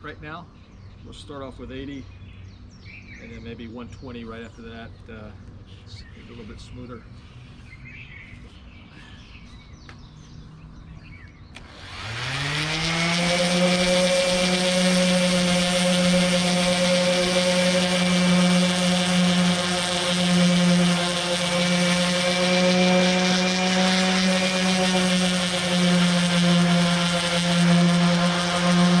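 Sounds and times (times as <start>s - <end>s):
electric sander running: 11.6s - 29.0s.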